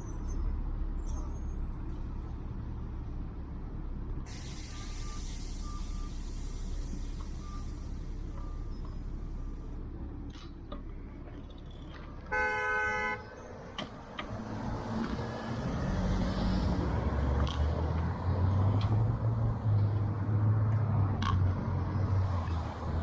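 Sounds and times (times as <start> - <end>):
vehicle horn toot: 12.3 - 13.3
passing vehicle engine rumble: 13.2 - 23.0.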